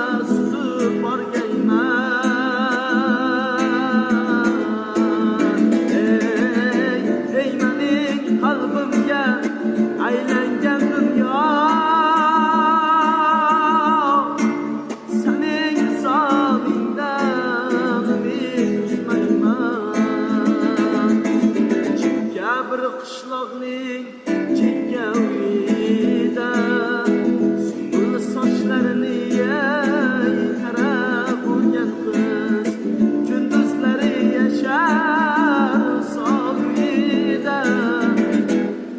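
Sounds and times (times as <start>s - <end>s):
plucked string accompaniment: 0.0s - 22.9s, 24.2s - 38.9s
person singing: 0.0s - 38.9s.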